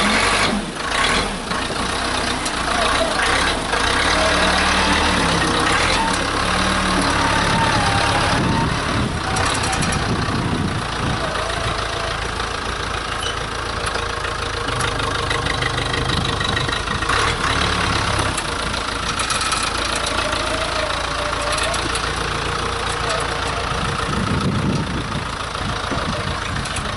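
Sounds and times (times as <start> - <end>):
backhoe engine running: 0.0 - 26.9.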